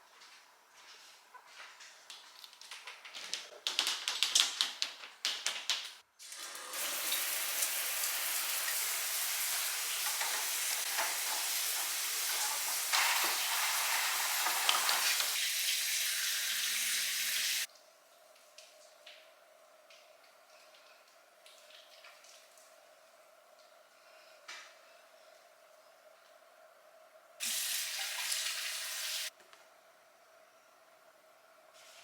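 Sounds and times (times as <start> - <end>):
tap water running into sink: 6.2 - 17.7, 27.4 - 29.3.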